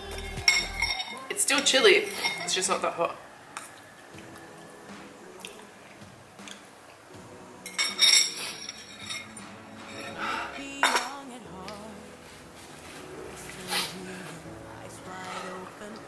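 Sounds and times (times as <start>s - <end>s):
utensils clinking against bowl: 0.0s - 5.6s, 7.7s - 11.2s.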